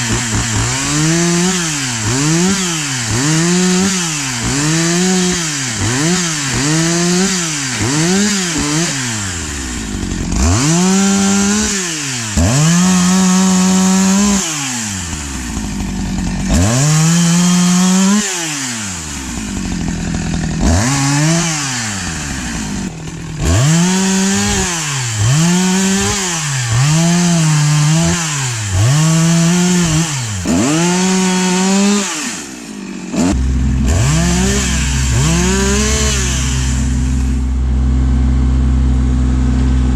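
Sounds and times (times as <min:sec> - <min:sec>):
chainsaw cutting log: 0:00.0 - 0:39.9
low steady engine: 0:32.7 - 0:39.9.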